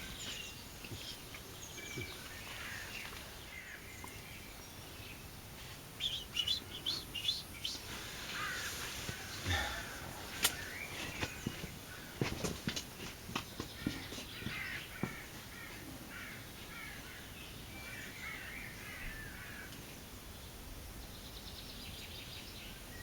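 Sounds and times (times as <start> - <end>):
songbird chirping: 0.0 - 12.6.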